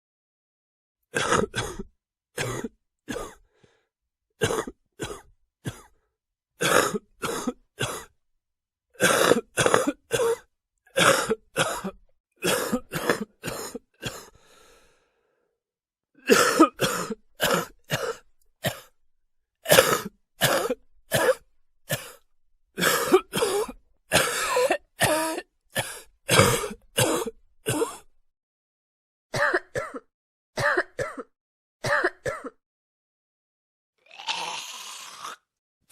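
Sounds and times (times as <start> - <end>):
person coughing: 1.2 - 3.4, 4.4 - 6.0, 6.6 - 8.1, 9.0 - 14.3, 16.2 - 18.9, 19.7 - 22.2, 22.8 - 28.1, 29.4 - 32.6.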